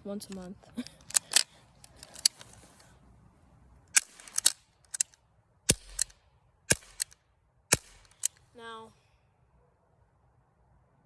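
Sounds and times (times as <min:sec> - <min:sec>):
bb revolver clicks and snaps: 0:03.9 - 0:08.4.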